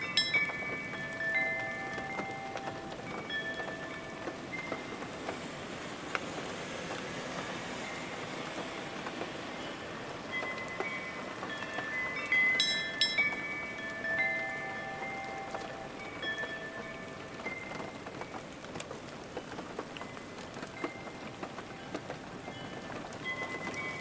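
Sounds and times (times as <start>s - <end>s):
chime-like ringing notes: 0.0s - 5.2s, 9.6s - 18.4s, 22.4s - 24.0s
water drips: 0.0s - 5.4s, 6.1s - 24.0s
steady rain: 0.0s - 24.0s.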